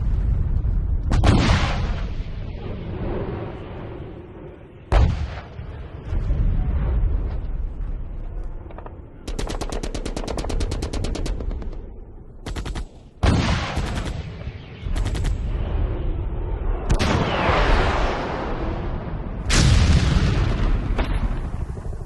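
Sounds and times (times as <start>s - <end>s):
machine-gun fire: 12.4s - 14.3s
explosion blast: 16.9s - 21.6s.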